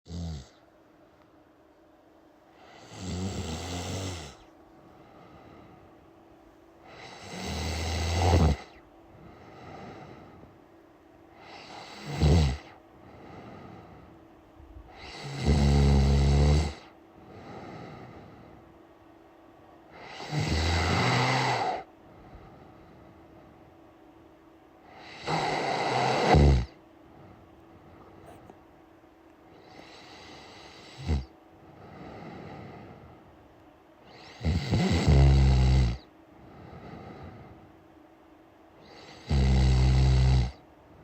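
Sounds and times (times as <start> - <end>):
person snoring loudly: 0.1 - 0.6, 2.6 - 4.5, 6.9 - 8.8, 11.4 - 12.8, 14.9 - 18.0, 19.9 - 21.9, 24.9 - 26.8, 29.6 - 32.9, 34.1 - 36.1, 38.8 - 40.6
soft breathing: 4.3 - 6.2, 8.6 - 11.8, 12.7 - 15.0, 17.1 - 18.8, 21.6 - 23.8, 27.0 - 28.7, 29.5 - 31.0, 31.6 - 33.4, 36.3 - 37.8.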